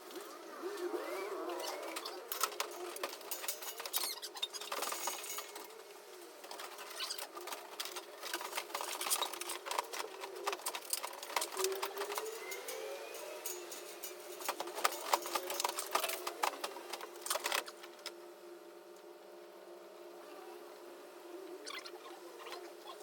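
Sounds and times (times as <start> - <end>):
faint squeaky sounds: 0.2 - 17.8, 20.2 - 23.0.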